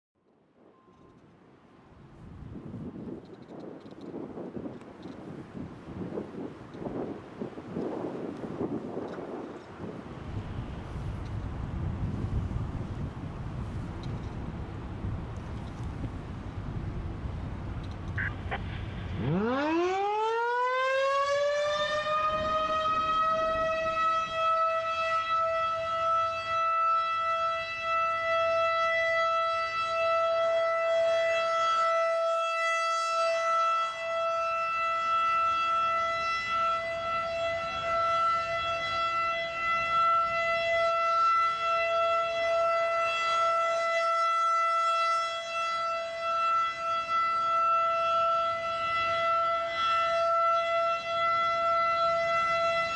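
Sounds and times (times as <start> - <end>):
warning siren winding up: 17.8 - 27.3.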